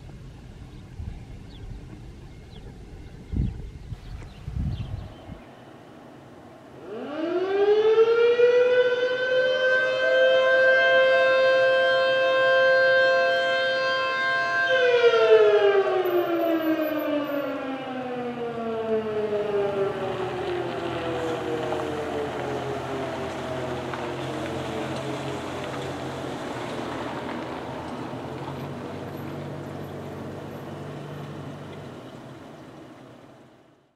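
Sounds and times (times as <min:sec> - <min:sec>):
outdoor warning siren: 0:06.6 - 0:31.6.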